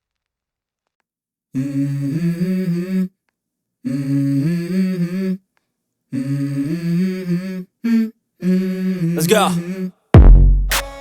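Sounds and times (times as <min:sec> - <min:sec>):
hummed vocal melody: 0:01.6 - 0:03.2, 0:03.8 - 0:05.4, 0:06.1 - 0:10.0.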